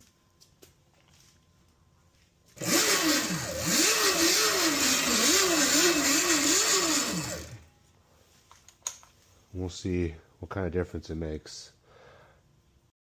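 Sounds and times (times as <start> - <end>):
whirring chain: 2.6 - 7.6
electric motor whine: 2.6 - 7.7.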